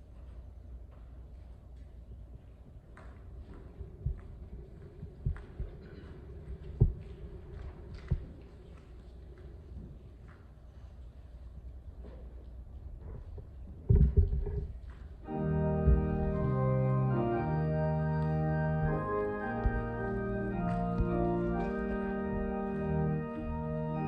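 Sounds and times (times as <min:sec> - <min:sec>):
low thumps: 0:13.8 - 0:24.0
organ playing slow chords: 0:15.2 - 0:24.0.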